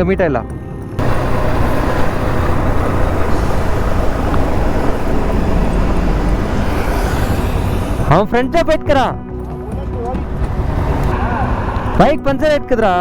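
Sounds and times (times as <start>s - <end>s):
road noise: 0.0s - 8.6s, 9.3s - 12.3s
motorcycle engine: 1.0s - 8.3s.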